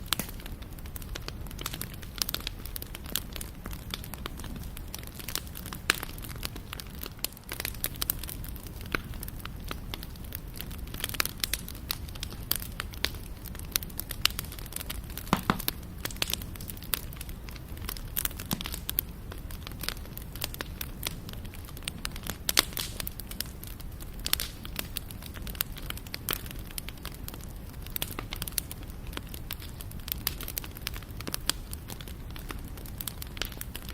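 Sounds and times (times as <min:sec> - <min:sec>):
low rumble of burning: 0:00.0 - 0:33.9
wood fire crackling and popping: 0:00.0 - 0:33.9.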